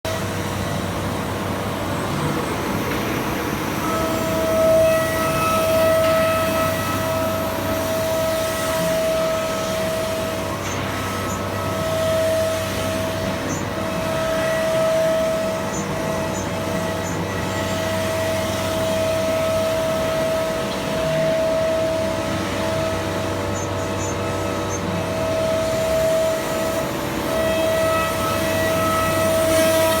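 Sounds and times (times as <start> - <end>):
router spindle high whine: 0.1 - 30.0.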